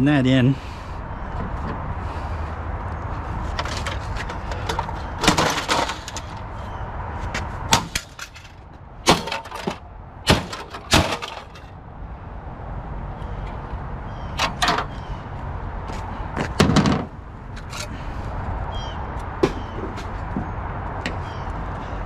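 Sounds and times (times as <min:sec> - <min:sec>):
steady low rumble: 0:00.0 - 0:05.2
plastic parts cracking and knocking: 0:03.6 - 0:06.4.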